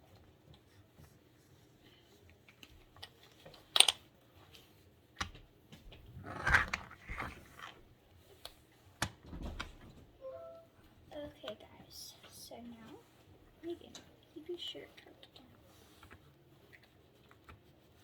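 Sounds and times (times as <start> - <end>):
rustling and scraping: 5.8 - 10.7.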